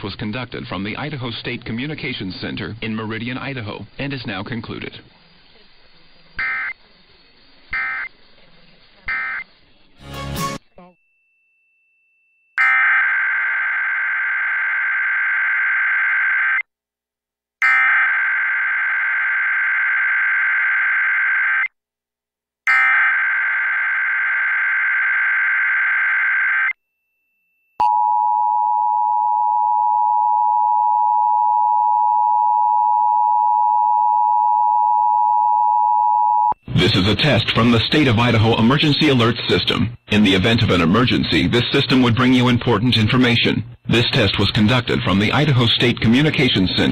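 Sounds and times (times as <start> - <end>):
harsh digital data screech: 6.4 - 6.8, 7.7 - 8.1, 9.1 - 9.6.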